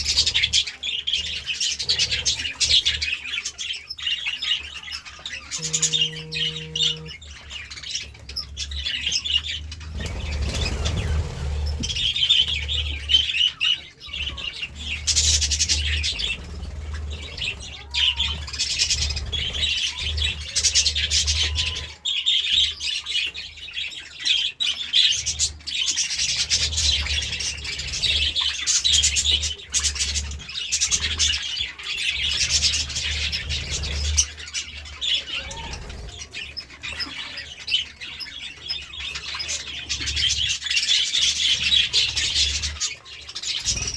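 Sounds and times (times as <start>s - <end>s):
budgerigars chirping: 0.0s - 43.9s.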